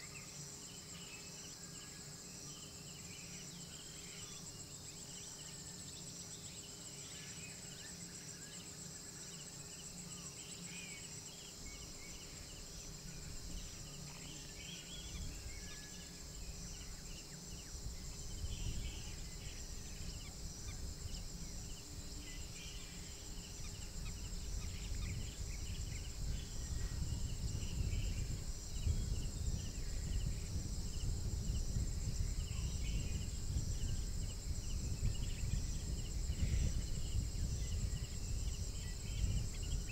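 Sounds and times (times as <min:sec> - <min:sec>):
crickets chirring: 0:00.0 - 0:39.9.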